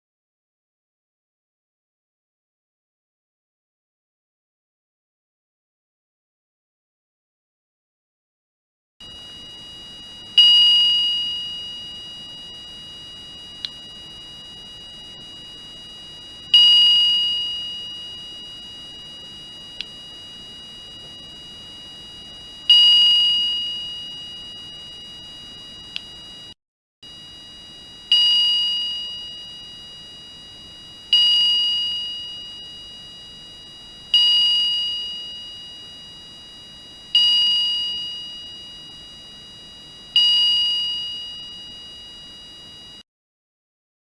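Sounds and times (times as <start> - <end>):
faint steady tone: 9.0 - 43.0
electronic chime notes: 10.4 - 20.8, 22.7 - 24.6
small click: 25.9 - 26.2.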